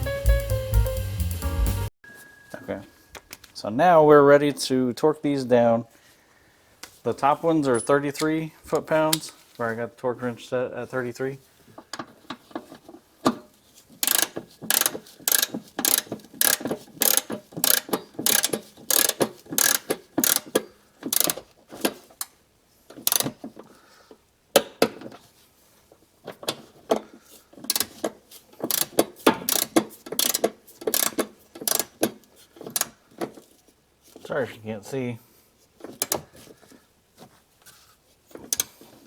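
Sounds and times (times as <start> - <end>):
torque wrench ratchet clicking: 14.0 - 21.4, 23.0 - 23.3, 28.7 - 32.0.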